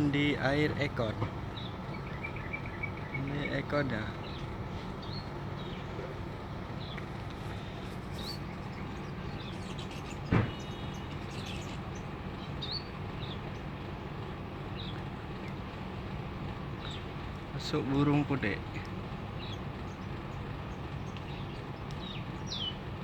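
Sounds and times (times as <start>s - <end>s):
air conditioner humming: 0.0s - 23.0s
faint bird chirps: 1.5s - 13.4s.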